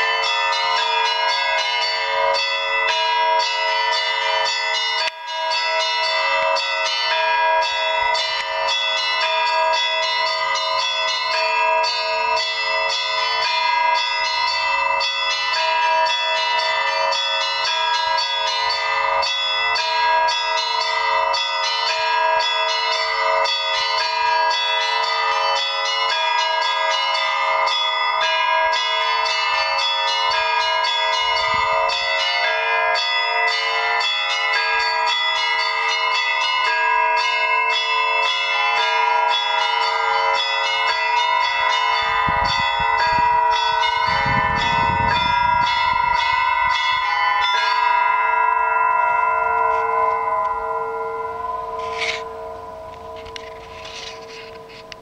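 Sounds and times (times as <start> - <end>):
deep church bell tones: 0.0 - 55.0
small bells chiming rapidly: 0.0 - 55.0.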